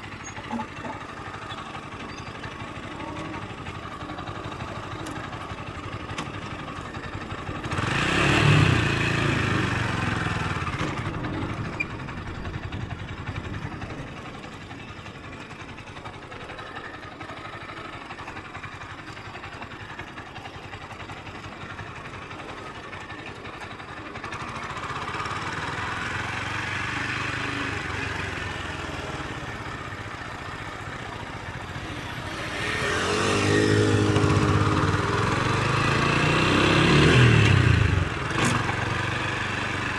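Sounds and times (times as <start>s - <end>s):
motorcycle engine revving: 0.1s - 14.0s, 23.7s - 39.9s.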